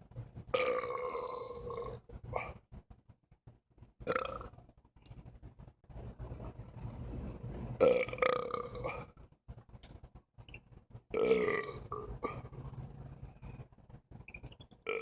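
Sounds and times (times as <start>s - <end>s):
drawn-out burps: 0.5s - 2.6s, 4.0s - 4.6s, 7.8s - 9.2s, 11.1s - 12.6s.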